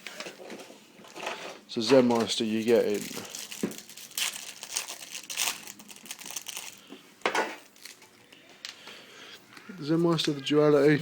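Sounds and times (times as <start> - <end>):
foil wrapper crinkling: 2.0 - 8.3.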